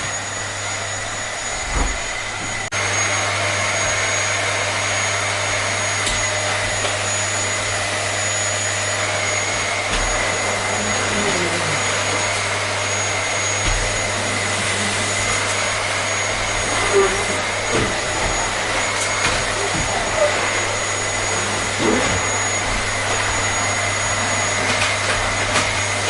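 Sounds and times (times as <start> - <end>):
vacuum cleaner running: 0.0 - 26.0.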